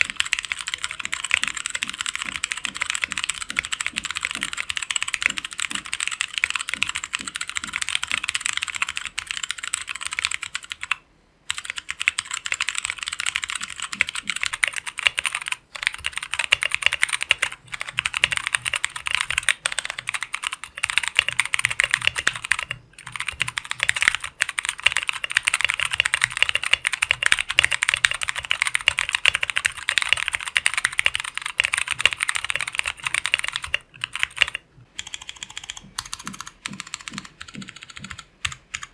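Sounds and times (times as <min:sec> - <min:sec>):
mechanical keyboard typing: 0:00.0 - 0:38.9.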